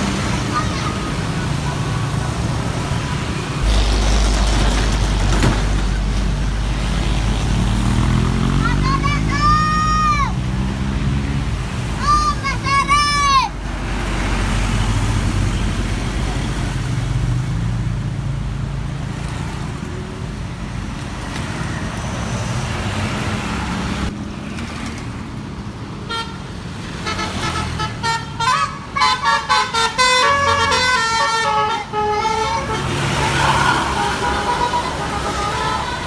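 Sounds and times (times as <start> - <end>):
diesel bus engine rumbling: 0.0 - 24.2, 25.2 - 36.0
traffic rumbling: 0.0 - 36.0
multi-tone bus horn melody: 0.7 - 9.0, 26.0 - 36.0.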